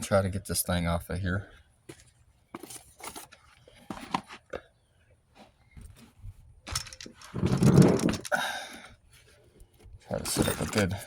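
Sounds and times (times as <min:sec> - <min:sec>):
clicks and rustles of hand work: 0:01.9 - 0:04.7, 0:05.4 - 0:08.4, 0:09.2 - 0:11.0
handling noise: 0:05.4 - 0:08.4.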